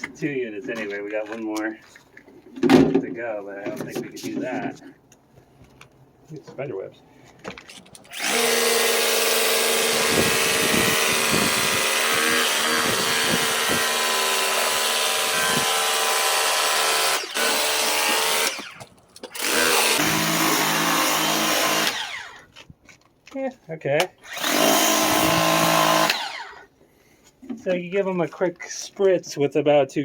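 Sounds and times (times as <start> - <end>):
pump whining: 7.8 - 22.5, 24.2 - 26.6.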